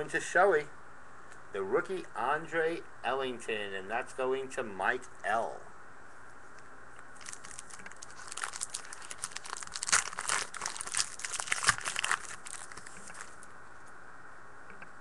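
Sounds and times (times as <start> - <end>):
wrapper tearing and crinkling: 7.2 - 13.5.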